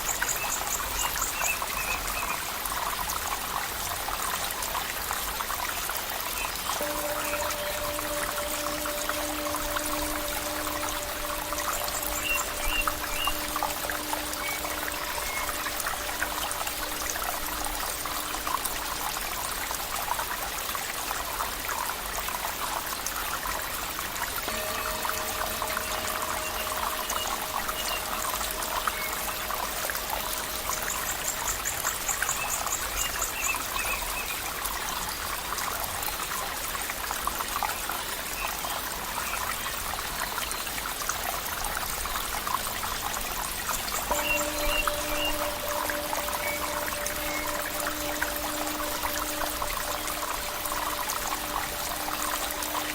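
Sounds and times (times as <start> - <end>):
water flowing and trickling: 0.0 - 52.9
faint held tones: 6.8 - 19.1, 24.4 - 32.7, 44.0 - 52.9.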